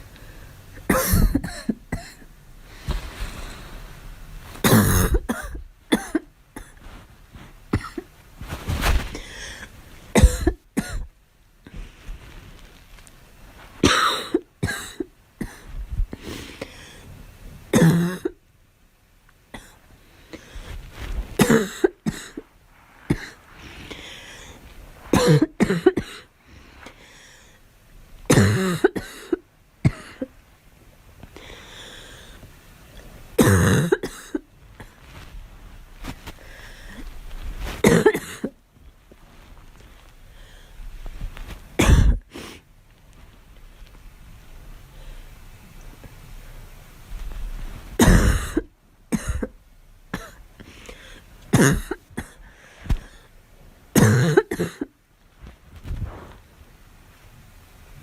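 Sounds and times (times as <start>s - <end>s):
girl coughing: 0.9s - 2.2s, 4.6s - 6.8s, 7.8s - 8.0s, 10.1s - 11.1s, 13.8s - 15.7s, 21.4s - 22.4s, 25.1s - 26.3s, 28.3s - 30.3s, 33.4s - 34.9s, 37.8s - 38.6s, 41.8s - 42.3s, 48.0s - 49.5s, 51.5s - 52.4s, 54.0s - 54.9s.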